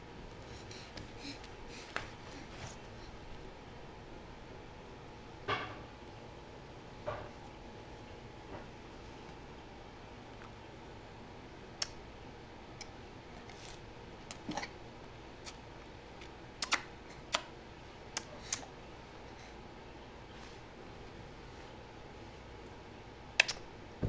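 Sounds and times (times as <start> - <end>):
lip-smacking kissy clicks: 16.6 - 17.5, 18.2 - 18.7, 23.4 - 23.7.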